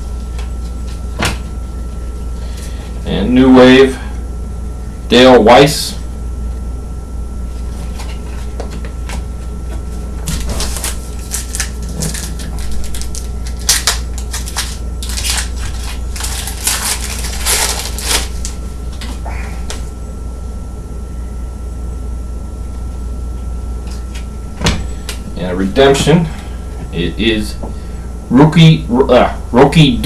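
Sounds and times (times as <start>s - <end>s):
steady background hum: 0.0s - 30.0s
wrapper crinkling and tearing: 10.4s - 18.6s.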